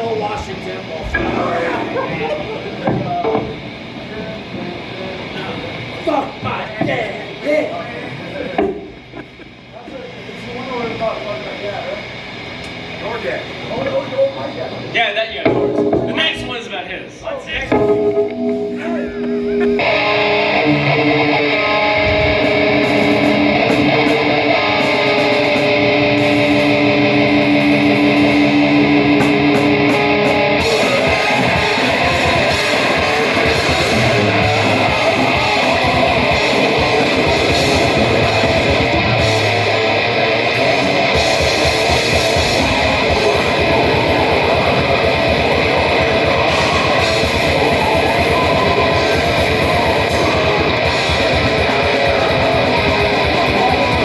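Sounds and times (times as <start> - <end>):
distorted electric guitar: 0.0 - 7.8, 17.5 - 54.0
band playing loud live music: 1.0 - 3.8, 17.7 - 54.0.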